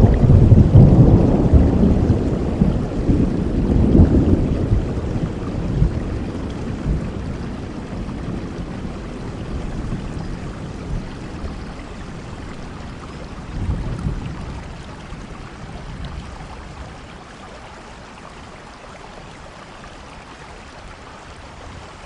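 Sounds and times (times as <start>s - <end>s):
thunder rumbling: 0.0s - 16.9s
steady rain: 0.0s - 22.0s.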